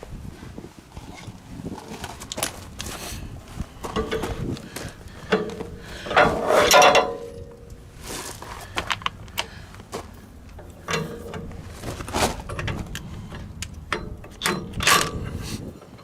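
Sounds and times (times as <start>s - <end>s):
metal clanks: 3.8s - 15.7s
wrench clicking on metal nut: 12.5s - 15.4s.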